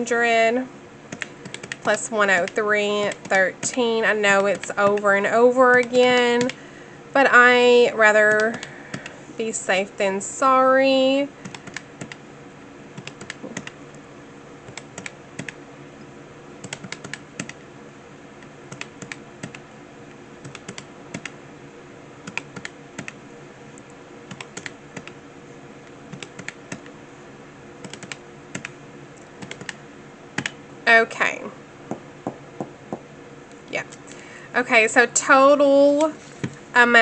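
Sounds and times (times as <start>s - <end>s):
faint steady hum: 0.0s - 37.0s
calculator buttons clicking: 1.1s - 3.8s, 4.4s - 5.1s, 5.7s - 6.6s, 8.3s - 9.1s, 13.0s - 13.8s, 16.6s - 17.6s, 20.4s - 21.4s, 24.3s - 25.2s, 26.1s - 26.9s, 27.8s - 28.8s, 29.4s - 29.8s.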